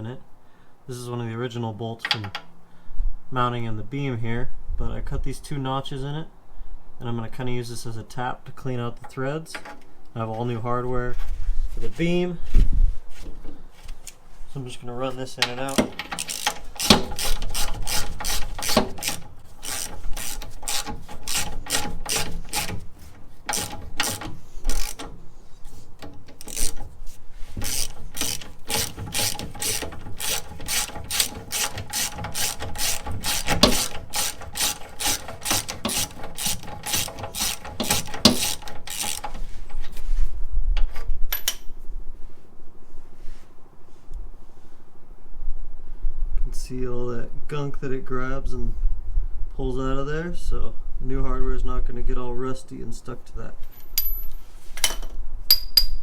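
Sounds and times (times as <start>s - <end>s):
socket ratchet clicking: 15.5s - 39.9s.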